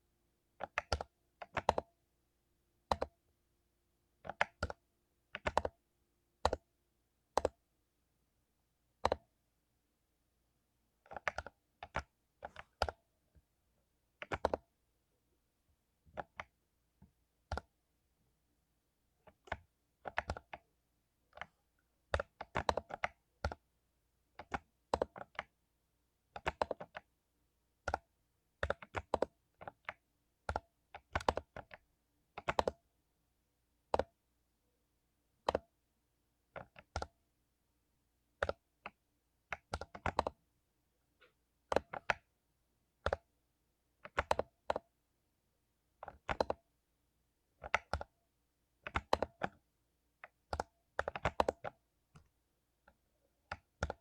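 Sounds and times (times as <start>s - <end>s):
mechanical keyboard typing: 0.6s - 1.9s, 2.9s - 3.2s, 4.2s - 5.8s, 6.4s - 6.7s, 7.3s - 7.6s, 9.0s - 9.3s, 11.0s - 13.0s, 14.2s - 14.7s, 17.4s - 17.7s, 19.2s - 20.7s, 21.3s - 23.6s, 24.4s - 25.6s, 26.3s - 27.1s, 27.8s - 31.8s, 32.4s - 32.8s, 35.4s - 35.7s, 36.5s - 37.2s, 38.4s - 40.4s, 41.7s - 42.3s, 43.0s - 43.3s, 44.0s - 44.9s, 46.0s - 46.7s, 47.6s - 48.2s, 48.8s - 49.6s, 50.2s - 52.3s, 52.9s - 54.0s.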